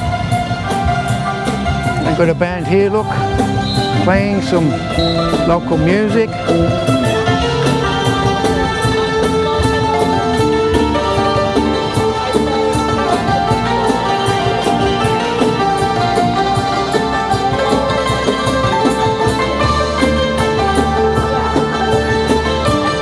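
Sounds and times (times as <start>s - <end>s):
live band playing: 0.0s - 23.0s
percussion beat: 0.0s - 23.0s.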